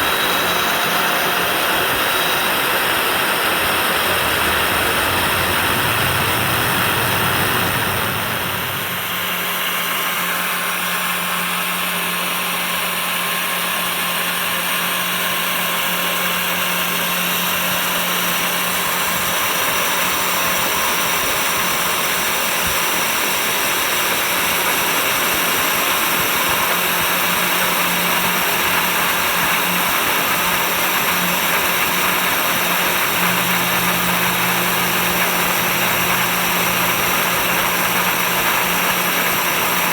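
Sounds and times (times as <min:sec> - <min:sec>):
spindle motor hum: 0:00.0 - 0:12.8, 0:16.5 - 0:39.9
low rumble: 0:04.0 - 0:09.7.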